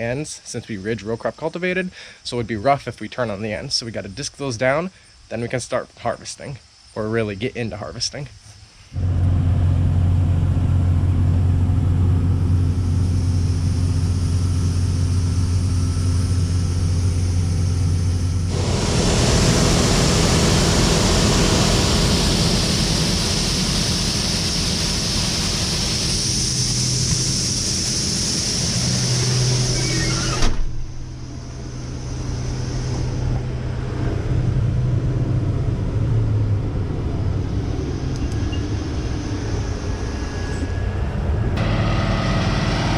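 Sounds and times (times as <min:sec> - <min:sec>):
hissy machine noise: 0:08.4 - 0:41.0, 0:41.6 - 0:42.9
diesel engine running: 0:09.0 - 0:40.0, 0:41.4 - 0:42.9.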